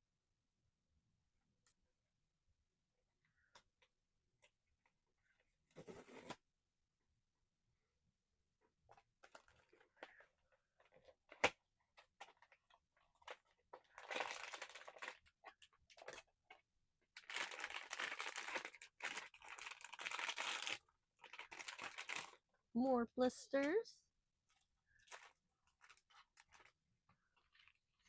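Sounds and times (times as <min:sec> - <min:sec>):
plastic packaging crinkling and tearing: 0:09.1 - 0:10.2, 0:10.8 - 0:16.3, 0:17.2 - 0:22.4, 0:24.5 - 0:28.0.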